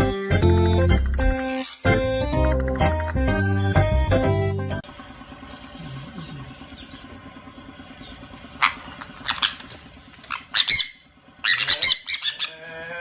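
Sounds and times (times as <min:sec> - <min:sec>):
bird squawking: 0:01.2 - 0:01.9, 0:03.3 - 0:04.0, 0:04.9 - 0:12.8
faint steady hum: 0:04.8 - 0:13.0.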